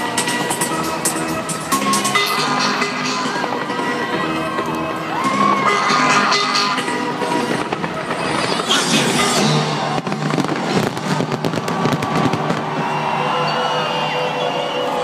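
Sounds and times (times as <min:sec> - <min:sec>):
loud music: 0:00.0 - 0:15.0
fireworks bursting and crackling: 0:05.5 - 0:13.4.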